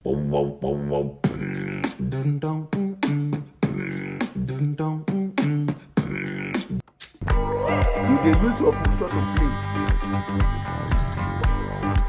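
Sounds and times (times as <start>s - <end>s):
music with a steady beat: 2.7s - 12.0s.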